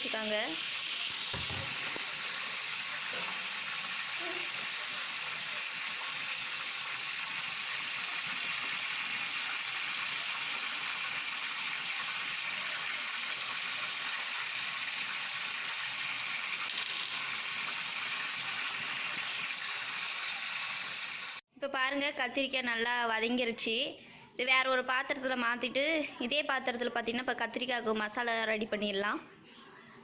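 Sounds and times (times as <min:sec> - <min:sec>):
hiss of food cooking: 0:00.0 - 0:21.4.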